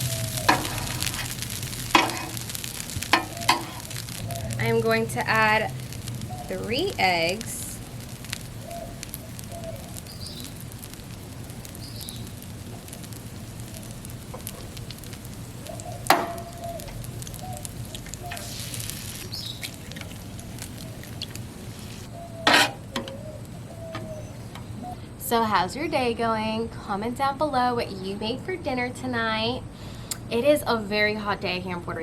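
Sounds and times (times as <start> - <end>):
eggs sizzling on a griddle: 0.0 - 25.0
faint crackling: 0.0 - 25.0.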